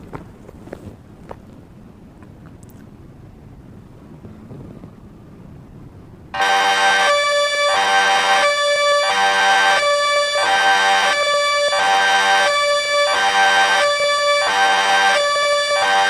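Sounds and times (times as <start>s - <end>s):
two-tone level crossing siren: 6.4s - 16.0s.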